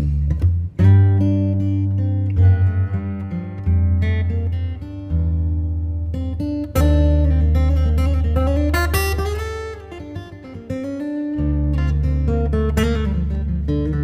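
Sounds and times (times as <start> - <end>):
steady bass: 0.0 - 9.6
acoustic guitar plucked and strummed: 0.0 - 14.0.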